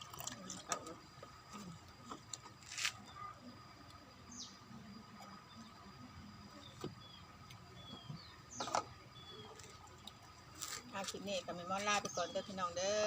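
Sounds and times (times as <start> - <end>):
quiet background noise: 0.0 - 13.0
faint bird chirps: 2.9 - 10.1.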